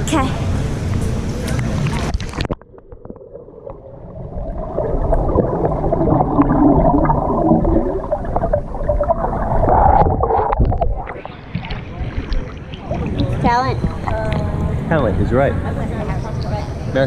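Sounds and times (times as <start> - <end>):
muffled underwater churning: 0.8 - 15.0.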